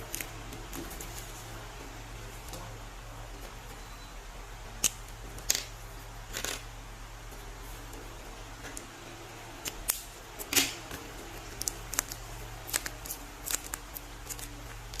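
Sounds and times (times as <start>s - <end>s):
faint low hum: 0.0s - 15.0s
paper crinkling and crackling: 11.4s - 15.0s.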